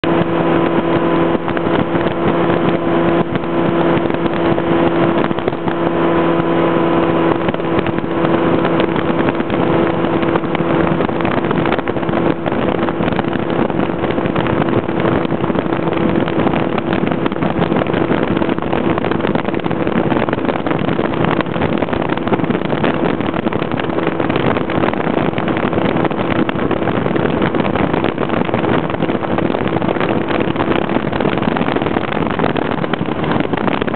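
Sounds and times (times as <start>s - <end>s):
constant rushing noise: 0.0s - 33.9s
vehicle engine hum: 0.0s - 33.9s.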